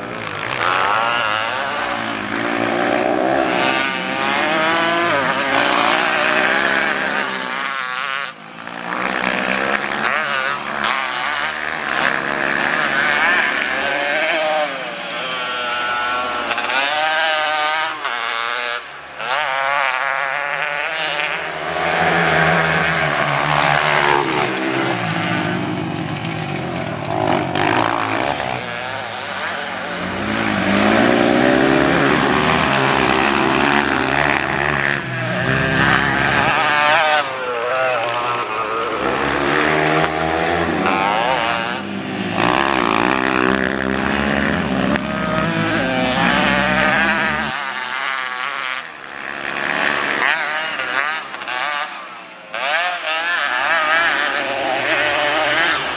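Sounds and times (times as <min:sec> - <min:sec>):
motorbike engine revving: 0:00.0 - 0:55.9.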